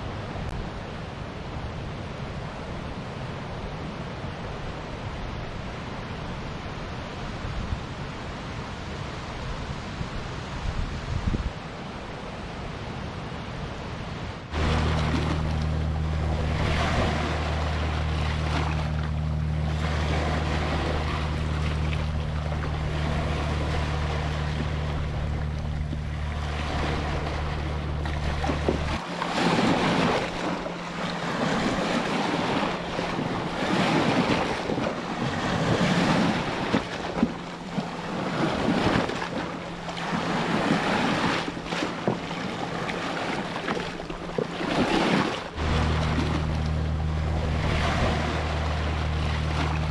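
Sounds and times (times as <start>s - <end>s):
ocean waves washing in: 0.0s - 49.9s
steady low hum: 14.4s - 49.9s.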